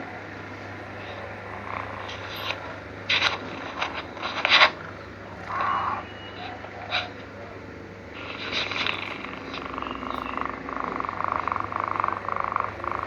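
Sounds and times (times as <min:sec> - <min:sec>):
kitten snoring: 0:00.8 - 0:07.2, 0:08.2 - 0:13.0.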